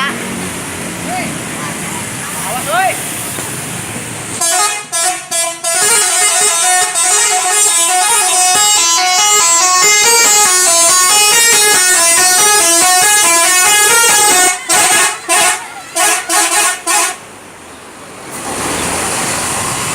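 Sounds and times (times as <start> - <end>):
bus horn playing a tune: 4.4 - 17.3.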